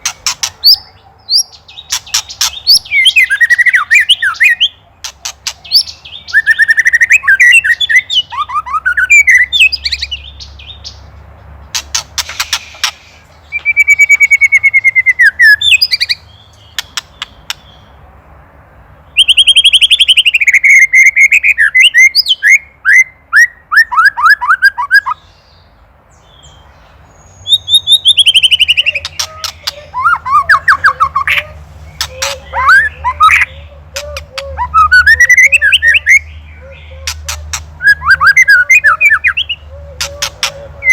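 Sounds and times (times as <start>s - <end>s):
bird singing whistled phrases: 2.5s - 4.8s, 5.6s - 10.3s, 13.5s - 16.2s, 19.2s - 25.2s, 27.4s - 40.9s.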